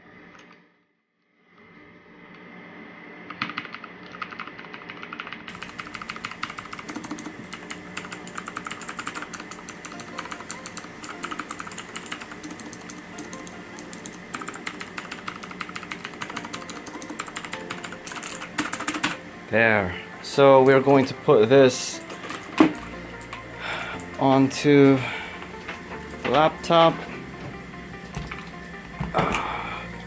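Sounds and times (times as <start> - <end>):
mechanical keyboard clacking: 3.4 - 19.2, 21.8 - 24.3
background music: 5.5 - 30.0.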